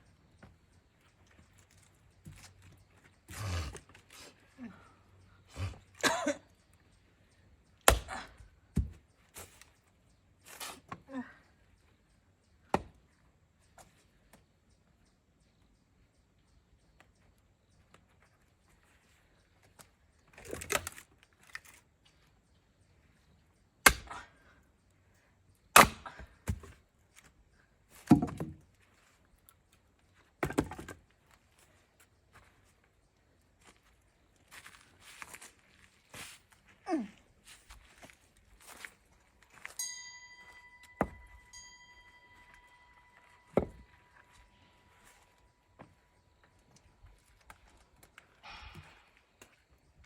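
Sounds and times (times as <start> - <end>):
axe splitting log: 7.8 - 9.0, 12.7 - 12.9, 20.4 - 21.0, 23.8 - 24.2, 25.7 - 26.8, 28.0 - 28.6, 30.4 - 31.0, 41.0 - 41.4, 43.5 - 44.0.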